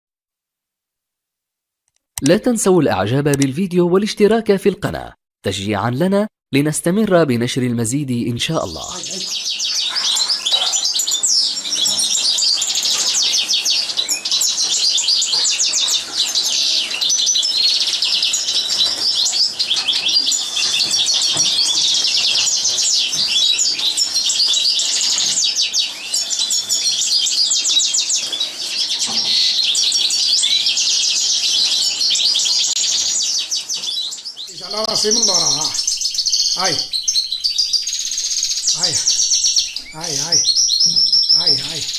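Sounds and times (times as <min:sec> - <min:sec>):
goldfinch singing: 0:08.4 - 0:41.9.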